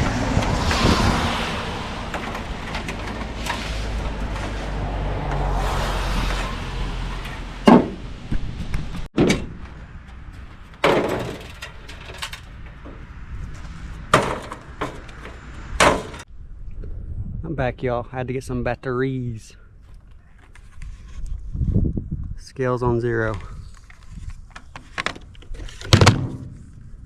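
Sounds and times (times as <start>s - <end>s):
sharp knocks: 7.1s - 8.0s, 14.1s - 16.2s.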